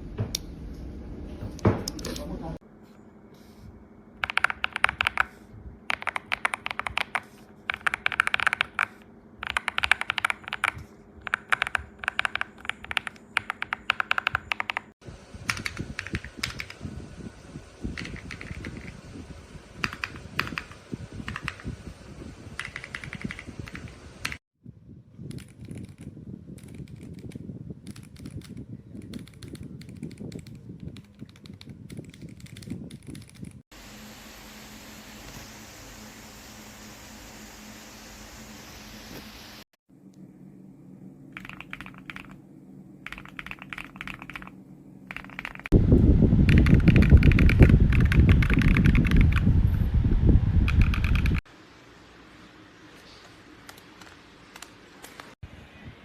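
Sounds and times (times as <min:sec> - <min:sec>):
mechanical keyboard typing: 0:04.2 - 0:05.3, 0:05.9 - 0:16.8, 0:18.0 - 0:19.0, 0:19.8 - 0:21.7, 0:22.6 - 0:24.4, 0:25.3 - 0:33.6, 0:41.3 - 0:42.4, 0:43.0 - 0:45.8, 0:46.5 - 0:49.4, 0:50.7 - 0:51.4.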